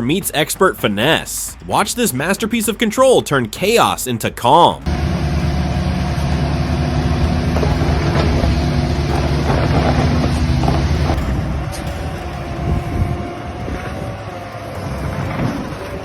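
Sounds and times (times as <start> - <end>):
excavator diesel engine running: 4.5 - 16.0
thin steady whine: 4.8 - 16.0.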